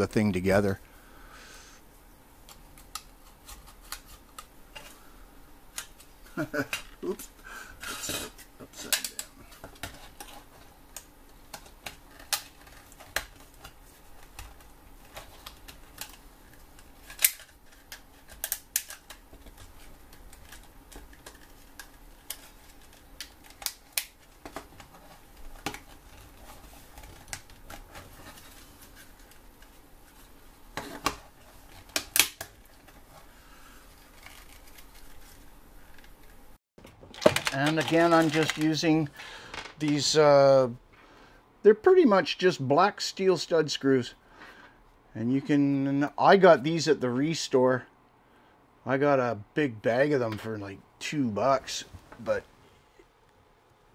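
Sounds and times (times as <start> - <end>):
plastic parts clicking and tapping: 36.8 - 38.8.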